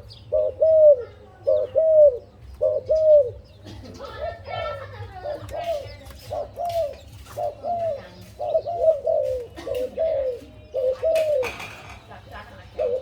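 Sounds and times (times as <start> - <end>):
doves cooing: 0.0 - 13.0.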